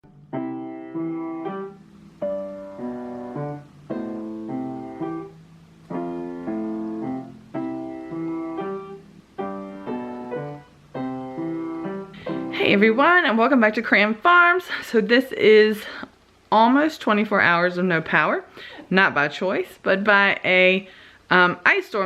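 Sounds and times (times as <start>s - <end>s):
slow piano chords: 0.0s - 13.4s.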